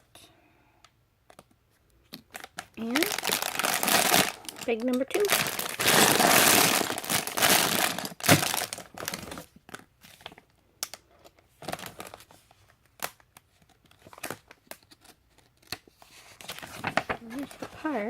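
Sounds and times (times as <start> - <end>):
plastic bag crinkling: 2.3 - 10.4, 11.6 - 12.4
plastic bag tearing: 2.4 - 9.5.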